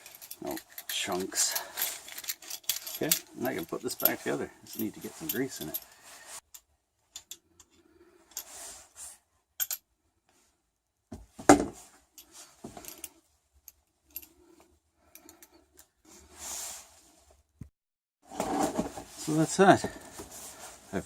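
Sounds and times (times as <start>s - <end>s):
small metal parts clinking: 0.0s - 7.7s, 9.6s - 9.8s.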